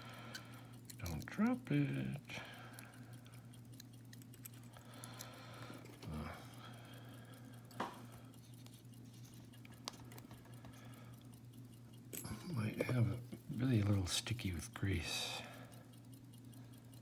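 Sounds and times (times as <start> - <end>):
steady low hum: 0.0 - 17.0
small lock parts clicking: 0.3 - 1.4, 2.2 - 6.2, 7.6 - 14.0.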